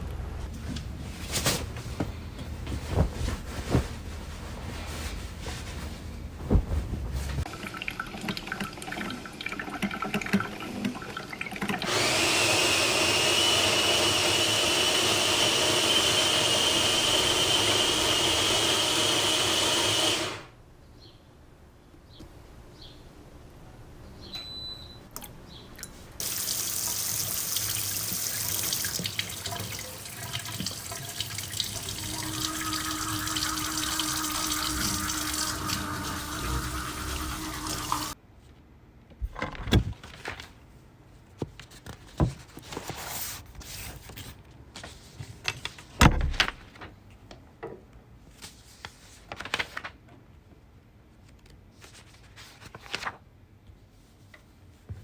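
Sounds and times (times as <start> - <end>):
tap water running into sink: 26.2 - 38.2.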